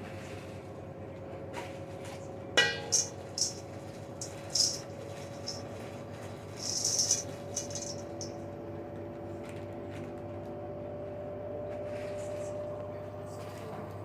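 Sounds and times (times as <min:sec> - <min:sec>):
rattling clatter: 0:02.6 - 0:08.4.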